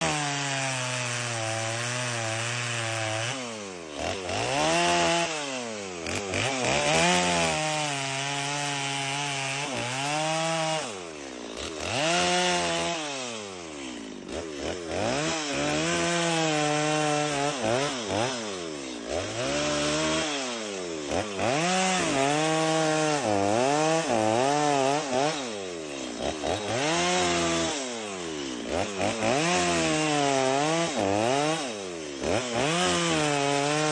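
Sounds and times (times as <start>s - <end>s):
chainsaw cutting wood: 0.0s - 33.9s.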